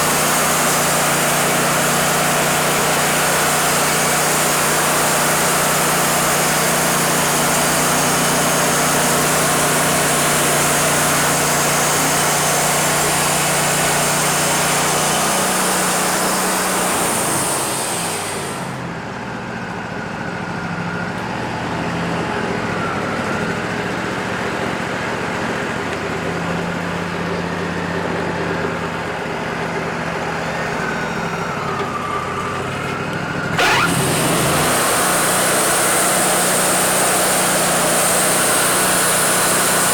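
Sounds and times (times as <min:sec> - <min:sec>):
band saw cutting log: 0:00.0 - 0:18.8, 0:33.5 - 0:39.9
sawmill engine running: 0:00.0 - 0:39.9
faint wavering whines: 0:33.6 - 0:35.0.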